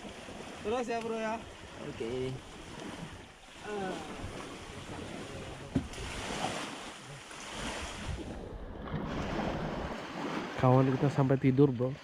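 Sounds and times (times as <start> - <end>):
sea waves: 0.0 - 12.0
wind: 0.0 - 12.0
wind buffeting microphone: 7.5 - 10.5.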